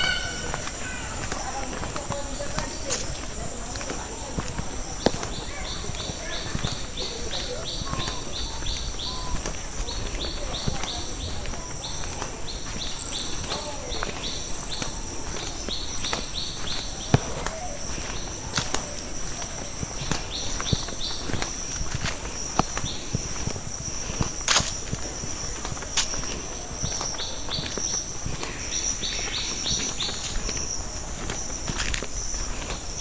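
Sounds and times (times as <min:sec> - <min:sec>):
insects chirping short high notes: 0:00.0 - 0:01.7
footsteps on dirt path: 0:00.0 - 0:33.0
steady high insect drone: 0:00.0 - 0:33.0.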